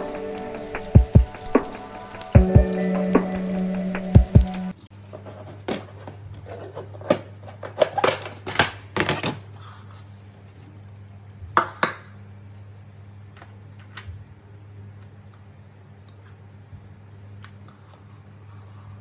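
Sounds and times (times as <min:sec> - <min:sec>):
steady low hum: 0:00.0 - 0:04.8.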